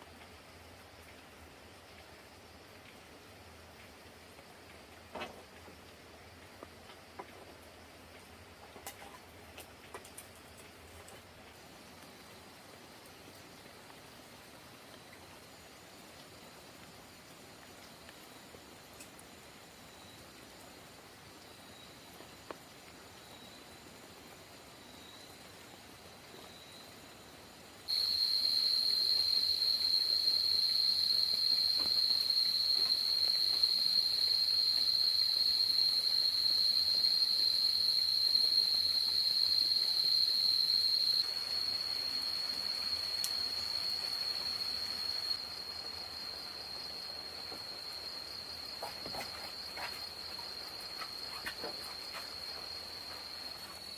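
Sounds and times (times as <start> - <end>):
soft hiss: 0.0 - 53.9
insects trilling: 17.9 - 53.9.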